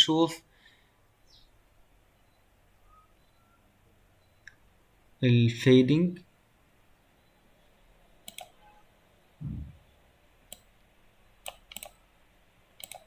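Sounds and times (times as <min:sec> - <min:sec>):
computer mouse clicks: 0:08.2 - 0:08.6, 0:10.5 - 0:12.0, 0:12.8 - 0:13.0
soft low thump: 0:09.4 - 0:09.9.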